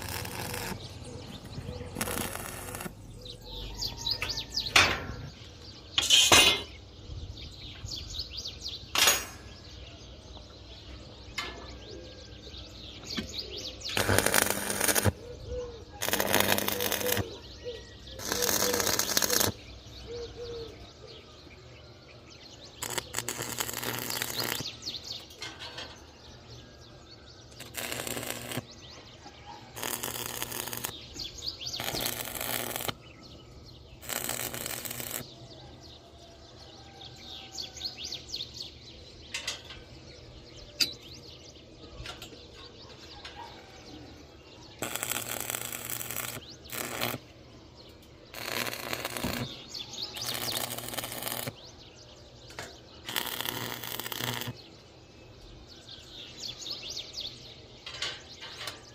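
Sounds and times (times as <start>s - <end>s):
electric arc welding bursts: 0.0s - 0.9s, 1.9s - 3.0s, 13.9s - 15.2s, 16.0s - 17.4s, 18.2s - 19.6s, 22.8s - 24.8s, 27.6s - 28.7s, 29.8s - 31.0s, 31.7s - 33.0s, 34.0s - 35.3s, 44.8s - 47.3s, 48.4s - 51.6s, 53.1s - 54.6s
birds chirping: 0.0s - 58.9s.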